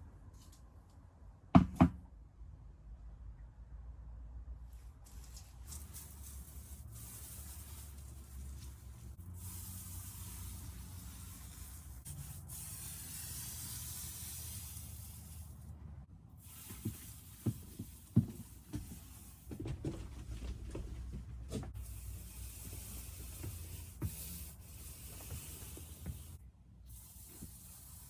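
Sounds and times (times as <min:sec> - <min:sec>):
paint spraying hiss: 0:05.7 - 0:15.6, 0:16.4 - 0:19.4, 0:21.8 - 0:28.0.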